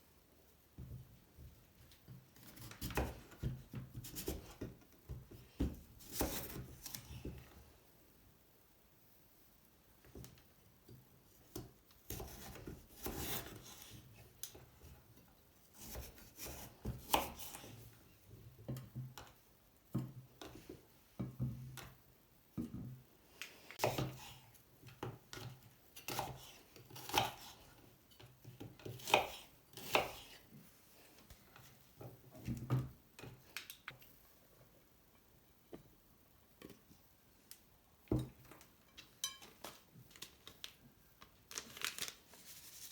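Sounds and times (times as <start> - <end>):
knife on chopping board: 26.0 - 27.7, 28.9 - 30.4.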